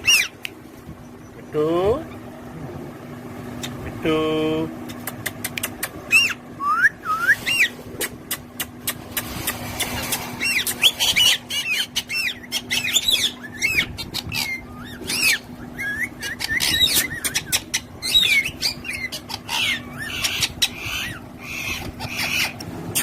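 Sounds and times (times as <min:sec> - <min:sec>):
parrots chirping and chattering: 0:00.0 - 0:04.1, 0:04.7 - 0:06.5, 0:07.1 - 0:23.0
faint steady hum: 0:00.0 - 0:23.0
sharp clicks: 0:04.9 - 0:06.0.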